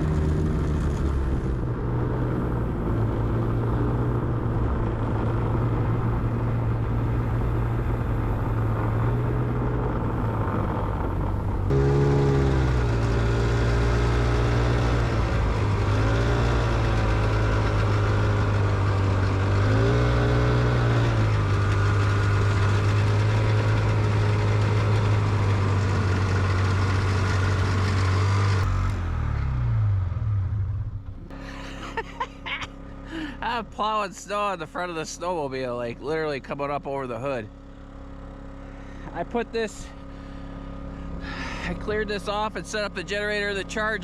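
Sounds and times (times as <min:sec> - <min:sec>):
snowmobile engine revving: 0:00.0 - 0:30.5, 0:31.2 - 0:44.0.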